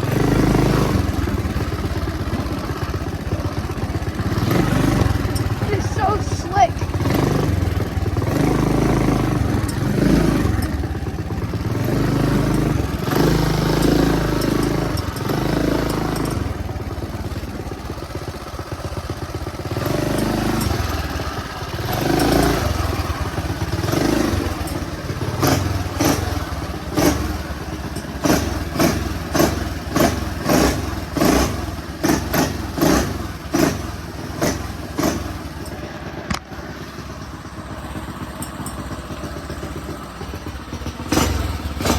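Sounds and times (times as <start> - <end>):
motorbike engine revving: 0.0 - 41.9.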